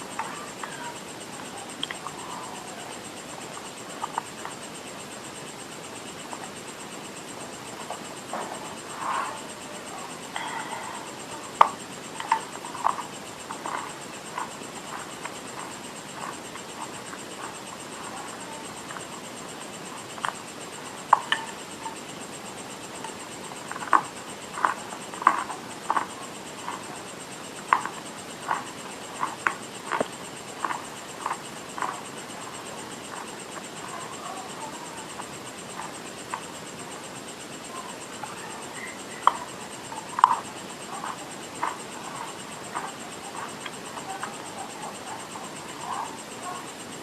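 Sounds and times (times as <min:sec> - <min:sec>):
clay being chewed crunchily: 0:10.4 - 0:19.1, 0:23.6 - 0:27.0, 0:27.6 - 0:36.5, 0:38.2 - 0:46.0.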